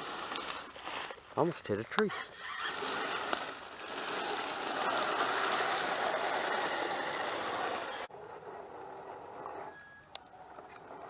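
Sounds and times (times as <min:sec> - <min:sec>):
toy truck motor whirring: 0:00.0 - 0:01.1, 0:02.2 - 0:11.0.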